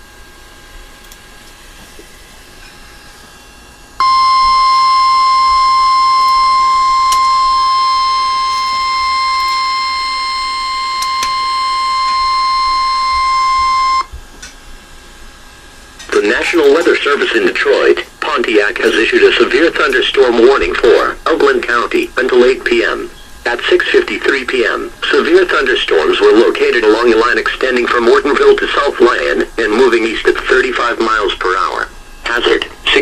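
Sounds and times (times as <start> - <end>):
steady high alert tone: 4.0 - 14.1.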